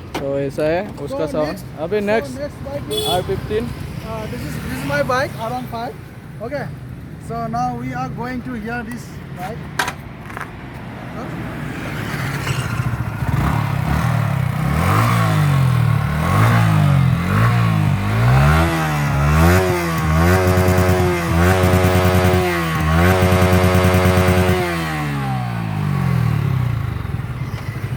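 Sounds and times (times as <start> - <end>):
motorcycle engine revving: 11.6 - 27.9.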